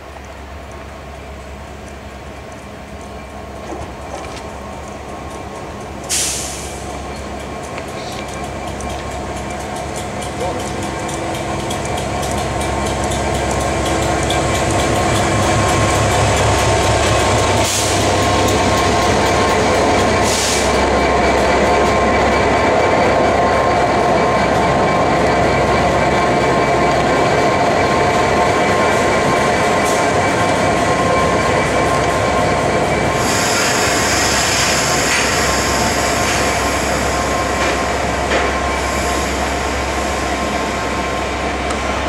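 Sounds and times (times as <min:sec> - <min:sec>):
train wheels rumbling: 0:00.0 - 0:42.0.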